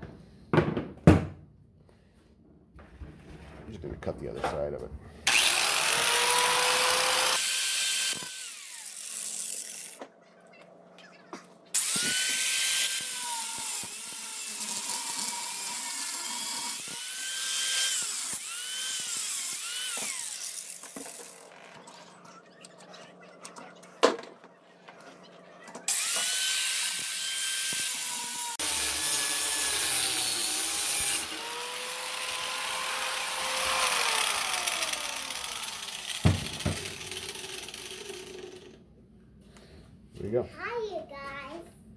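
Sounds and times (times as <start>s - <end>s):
power cutting tool whining: 5.3s - 10.0s, 11.7s - 21.9s, 25.9s - 38.8s.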